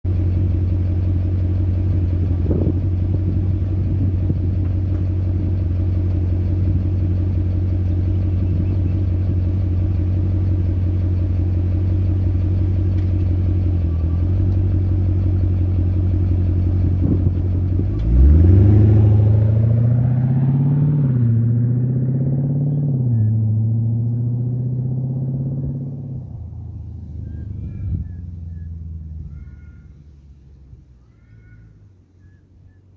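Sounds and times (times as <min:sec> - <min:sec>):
car engine idling with tick: 0:00.0 - 0:18.5, 0:25.6 - 0:32.9
car accelerating away: 0:12.4 - 0:30.9.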